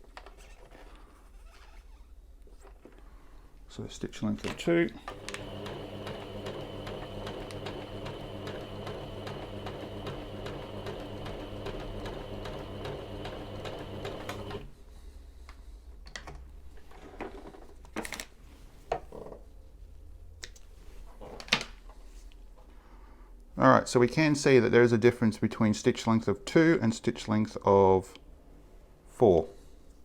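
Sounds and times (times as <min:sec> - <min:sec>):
electric sewing machine running: 0:05.0 - 0:14.7.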